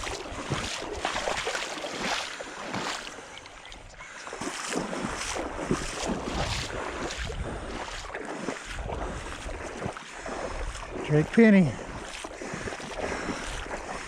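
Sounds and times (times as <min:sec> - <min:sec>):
wind on microphone: 0:00.0 - 0:01.4, 0:04.7 - 0:14.0
wading through shallow water: 0:00.0 - 0:14.0.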